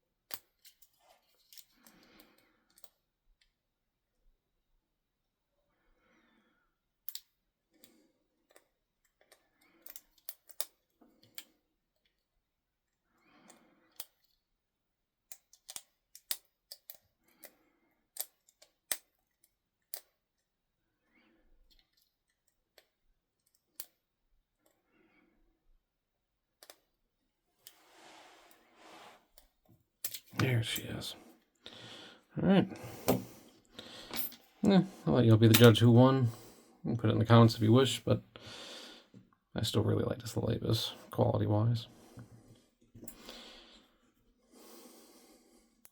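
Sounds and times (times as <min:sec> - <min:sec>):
soft scraping and handling: 0:00.5 - 0:01.9, 0:27.5 - 0:31.6.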